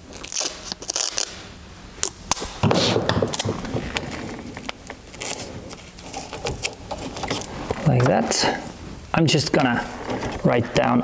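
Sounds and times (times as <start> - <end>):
tape pulled off roll: 2.3 - 7.8.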